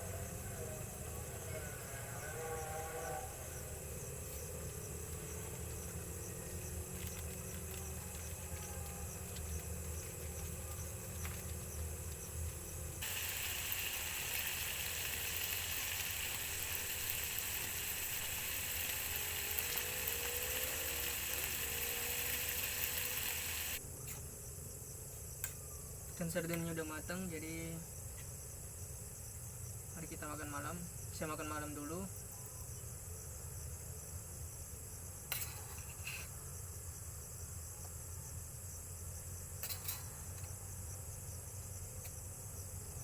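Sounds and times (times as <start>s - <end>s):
fish sizzling in a pan: 3.8s - 23.8s.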